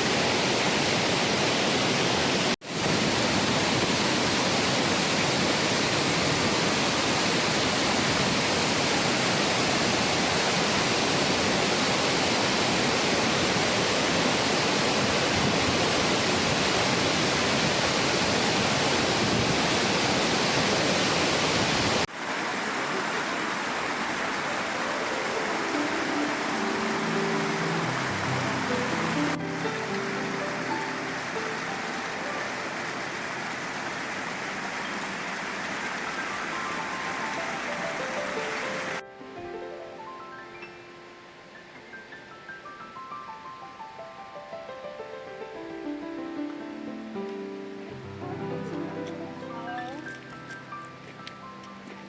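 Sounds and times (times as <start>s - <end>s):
rushing water roar: 0.0s - 39.1s
soft musical notes: 24.5s - 35.3s, 36.0s - 52.0s.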